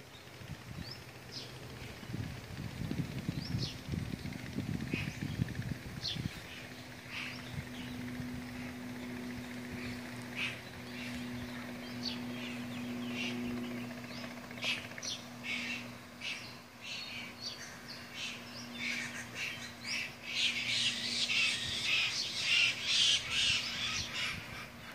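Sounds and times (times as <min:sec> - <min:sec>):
steady low hum: 0:00.0 - 0:24.9
birds chirping and squawking: 0:03.3 - 0:24.9.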